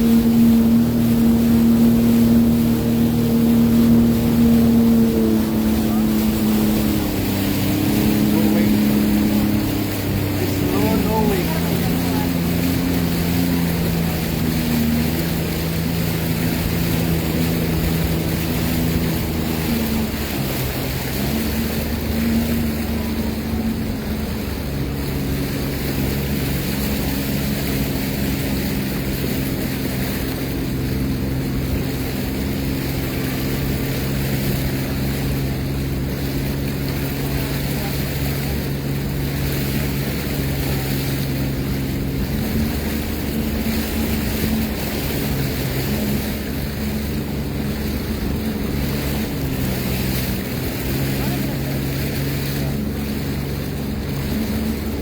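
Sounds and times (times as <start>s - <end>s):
water noise: 0.0s - 55.0s
watercraft engine running: 0.0s - 55.0s.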